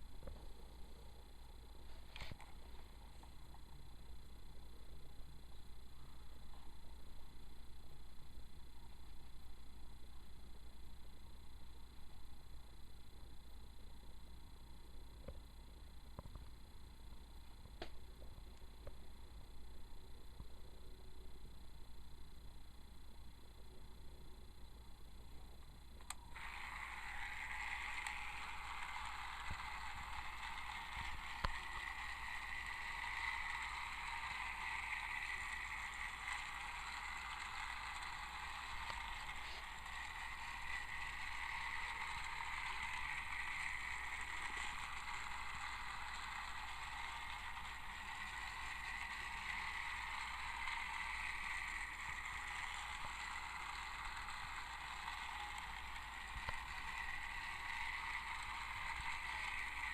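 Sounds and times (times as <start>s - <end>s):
toy train motor whirring: 26.0s - 59.9s.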